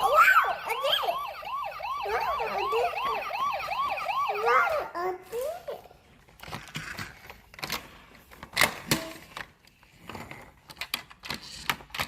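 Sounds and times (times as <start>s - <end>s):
toy vehicles clicking and knocking: 5.4s - 12.0s.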